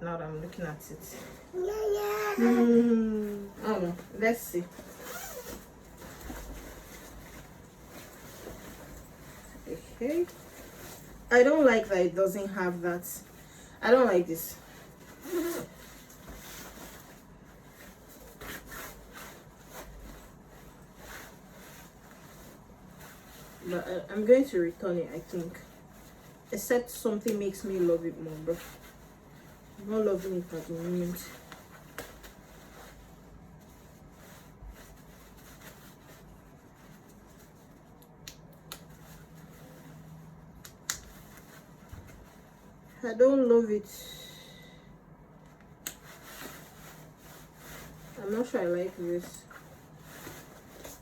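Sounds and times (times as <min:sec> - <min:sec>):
jacket fabric rustling: 0:00.4 - 0:43.9, 0:45.1 - 0:51.0
scratchy fabric swishes: 0:13.9 - 0:38.0, 0:46.0 - 0:51.0.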